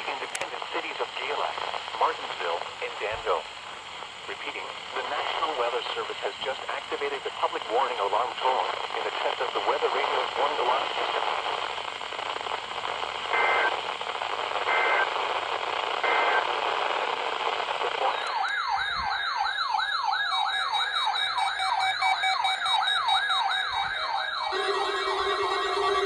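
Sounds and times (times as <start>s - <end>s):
radio hiss: 0.0s - 19.0s, 20.6s - 26.0s
rising warble alarm: 18.1s - 26.0s
two-pitch data bursts: 20.6s - 26.0s
steady lower tone: 23.7s - 26.0s.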